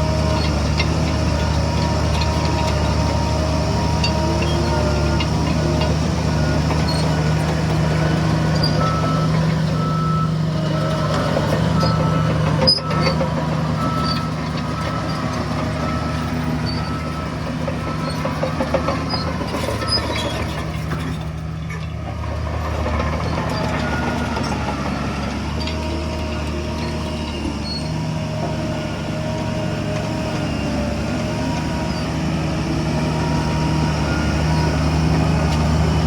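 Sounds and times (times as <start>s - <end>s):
diesel earthmoving equipment running: 0.0s - 36.0s
reversing alarm beeping: 1.2s - 20.5s, 22.8s - 27.8s, 33.0s - 36.0s.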